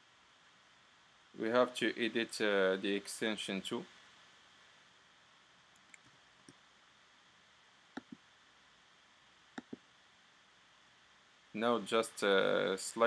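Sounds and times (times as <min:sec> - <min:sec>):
computer mouse clicks: 0:05.8 - 0:06.6, 0:07.9 - 0:08.2, 0:09.6 - 0:09.8.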